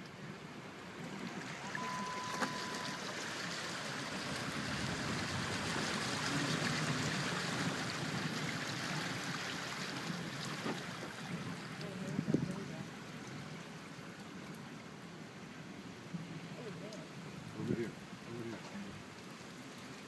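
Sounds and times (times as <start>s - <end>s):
vehicle driving on wet road: 0.0s - 20.0s
short beep: 1.6s - 3.0s.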